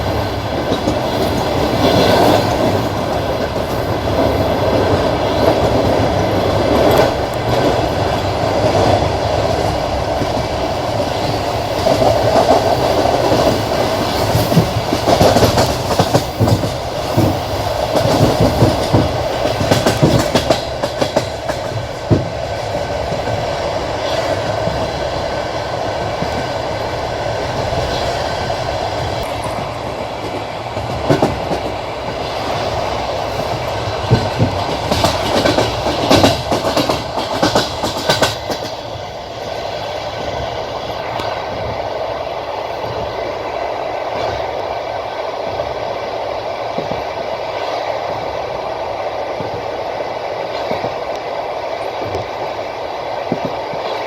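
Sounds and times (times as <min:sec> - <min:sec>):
train wheels clacking: 0:00.0 - 0:43.4, 0:44.1 - 0:54.0
train rumble: 0:00.0 - 0:54.0.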